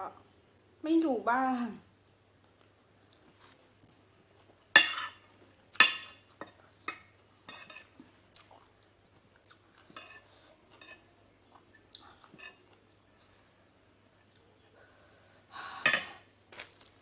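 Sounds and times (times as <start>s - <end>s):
cutlery clinking on a plate: 4.7s - 5.2s, 5.8s - 7.9s.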